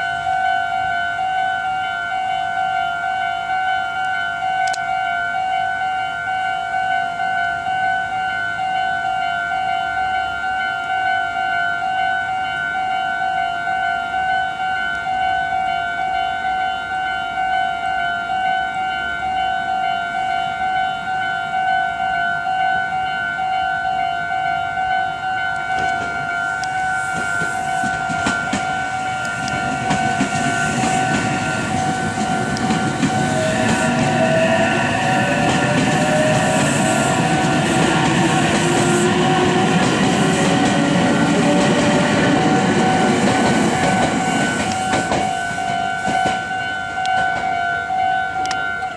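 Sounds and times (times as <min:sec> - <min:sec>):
level crossing warning bell: 0:00.0 - 0:48.9
train wheels rumbling on rails: 0:25.5 - 0:48.9.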